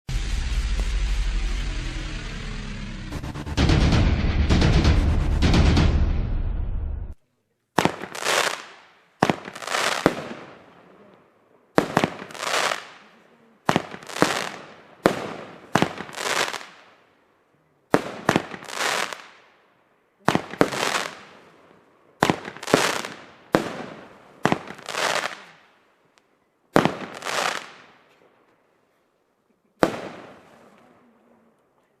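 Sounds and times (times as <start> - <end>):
fireworks reports with hiss: 7.8 - 11.2, 11.8 - 16.9, 17.9 - 19.4, 20.2 - 21.6, 22.2 - 25.7, 26.8 - 27.9.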